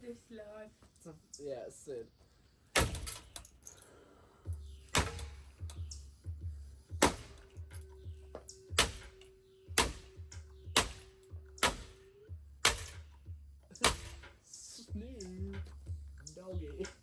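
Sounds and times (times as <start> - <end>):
low pulsing music: 2.4 - 17.0
hard impact strikes on fan: 4.9 - 5.4, 7.0 - 7.5, 8.8 - 9.2, 9.8 - 12.0, 12.6 - 13.0, 13.8 - 14.4.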